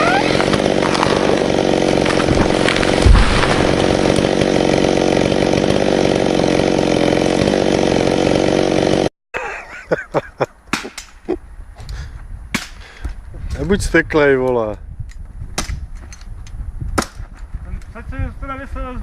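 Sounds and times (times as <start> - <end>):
chainsaw running at high revs: 0.0 - 9.1
sharp cracks and knocks: 0.3 - 4.3, 12.6 - 12.8, 15.6 - 17.5.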